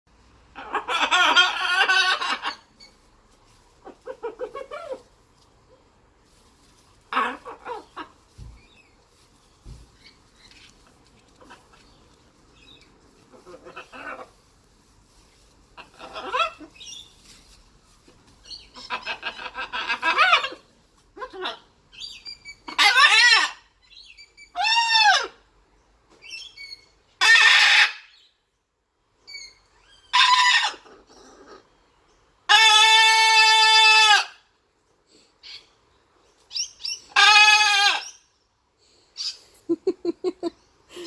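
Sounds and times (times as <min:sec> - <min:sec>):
macaw squawking: 0:00.6 - 0:02.7.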